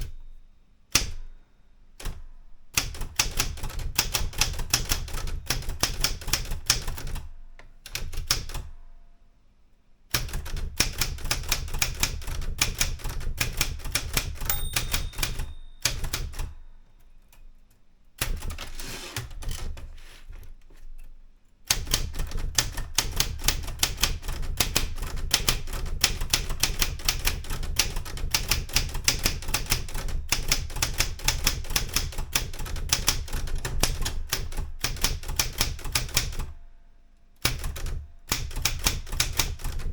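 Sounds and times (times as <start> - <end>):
manual typewriter keystrokes: 0.9 - 1.3, 2.0 - 8.7, 10.1 - 19.9, 20.9 - 36.6, 37.4 - 39.9.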